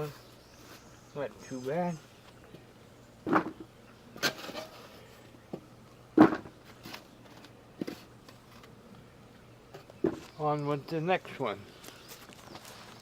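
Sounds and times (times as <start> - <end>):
knocks and thuds of pots: 3.2 - 4.8, 5.5 - 6.6.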